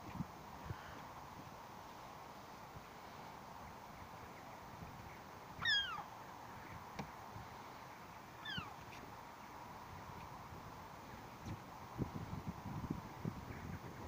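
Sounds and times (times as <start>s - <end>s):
seagull calls: 5.6s - 6.1s, 8.4s - 8.8s.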